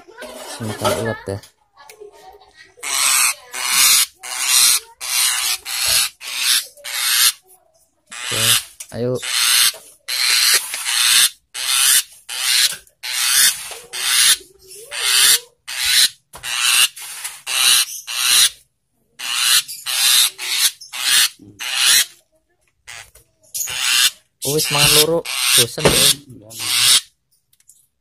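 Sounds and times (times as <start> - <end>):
bird harsh rasping begging calls: 2.8 - 7.4, 8.1 - 18.6, 19.2 - 22.2, 22.9 - 27.2.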